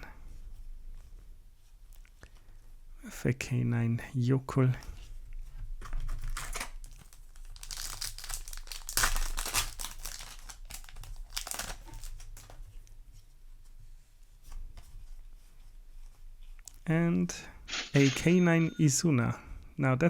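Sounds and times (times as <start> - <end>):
foil wrapper crinkling: 6.0 - 12.6
trading cards rustling: 6.2 - 12.6, 17.7 - 19.0.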